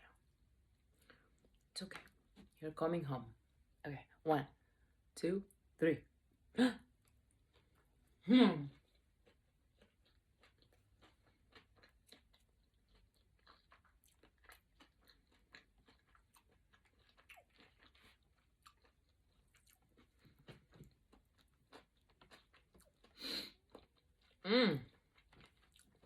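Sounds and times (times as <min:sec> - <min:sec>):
crunchy chewing: 0:07.0 - 0:26.0.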